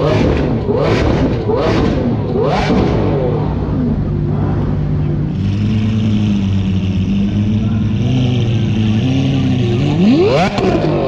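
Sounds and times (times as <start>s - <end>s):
car engine running: 0.0s - 11.0s.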